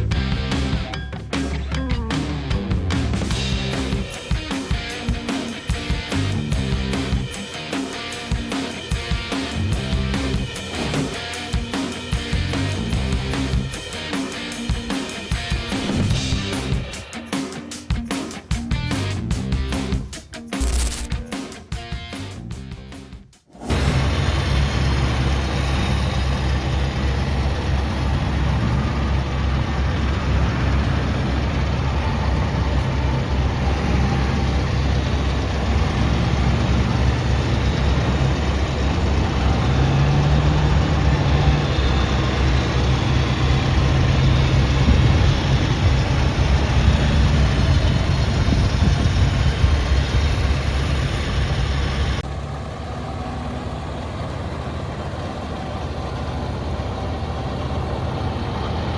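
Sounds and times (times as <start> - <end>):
tractor engine idling: 23.7 - 58.9.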